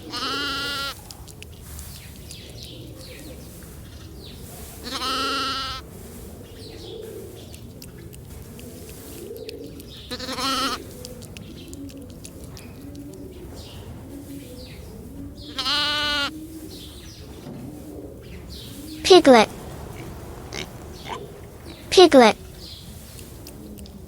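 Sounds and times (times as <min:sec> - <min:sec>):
lamb bleating: 0:00.1 - 0:01.0, 0:04.8 - 0:05.7, 0:10.1 - 0:10.8, 0:15.5 - 0:16.3, 0:20.5 - 0:22.4.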